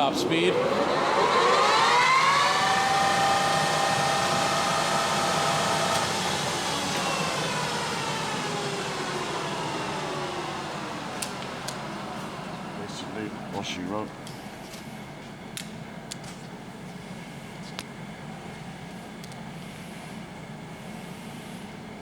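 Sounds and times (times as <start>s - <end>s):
lathe headstock whine: 0.0s - 14.6s.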